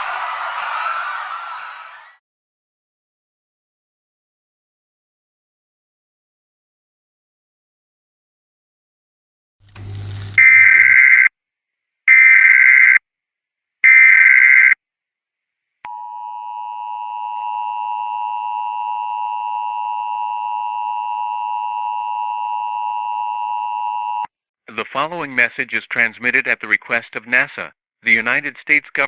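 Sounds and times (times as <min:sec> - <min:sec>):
dual-tone attention signal: 0:10.4 - 0:11.3
warbling data bursts: 0:10.4 - 0:11.3.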